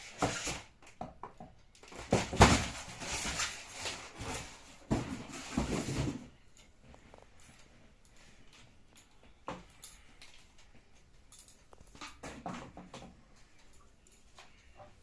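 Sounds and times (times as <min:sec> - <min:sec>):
packaging rustling: 0:01.8 - 0:06.4.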